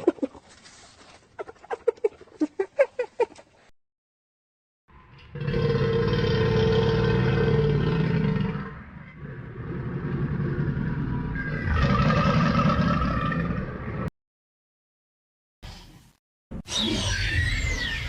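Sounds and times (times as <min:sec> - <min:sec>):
dinosaur growl: 0:05.3 - 0:14.1.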